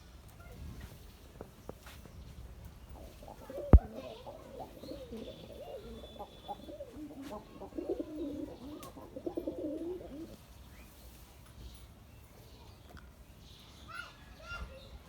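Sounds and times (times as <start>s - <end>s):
pigeons cooing: 3.0s - 10.4s.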